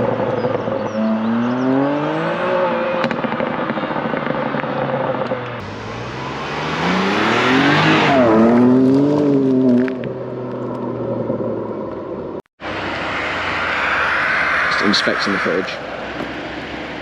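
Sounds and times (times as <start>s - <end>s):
car accelerating past: 5.6s - 10.0s.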